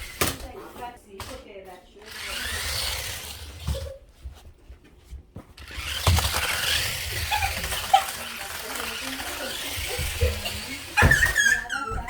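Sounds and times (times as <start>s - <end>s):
toy car electric motors whirring: 0.0s - 0.4s, 2.0s - 3.9s, 5.6s - 12.0s.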